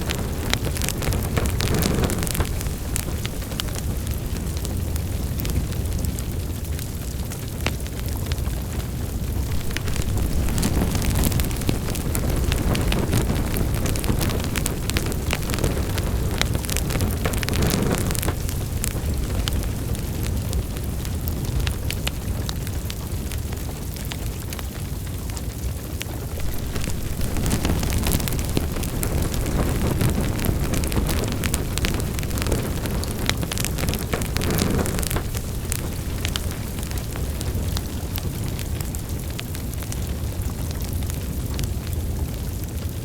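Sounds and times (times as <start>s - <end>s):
low rumble of flames: 0.0s - 43.0s
wood fire crackling and popping: 0.0s - 43.0s.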